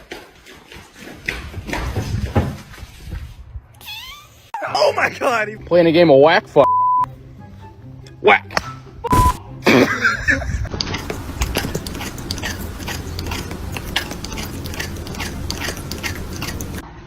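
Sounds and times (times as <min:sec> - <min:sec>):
crunchy chewing: 0:10.9 - 0:16.8.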